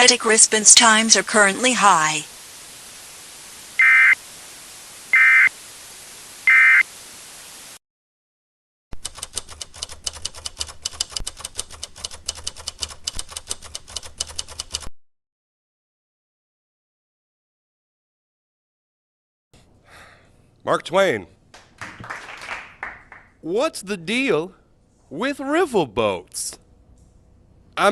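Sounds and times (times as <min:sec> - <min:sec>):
steady hiss: 0:00.0 - 0:07.8
warbling data tone bursts: 0:03.8 - 0:04.2, 0:05.1 - 0:05.5, 0:06.4 - 0:06.9
fast irregular clicking clatter: 0:09.0 - 0:14.9.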